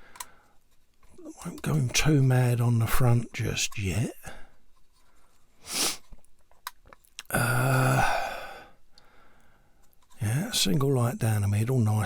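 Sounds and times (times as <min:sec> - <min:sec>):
man sighing: 0:07.2 - 0:08.8.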